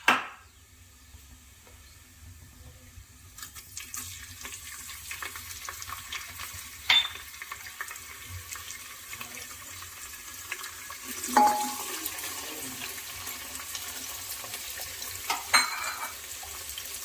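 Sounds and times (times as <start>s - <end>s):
metal pot clanging: 6.8s - 7.3s, 11.3s - 12.1s, 15.3s - 16.2s.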